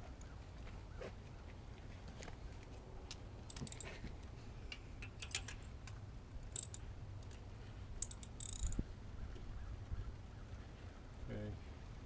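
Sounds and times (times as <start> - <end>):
ratchet clicking: 3.5 - 4.0, 4.7 - 7.4, 8.0 - 8.8.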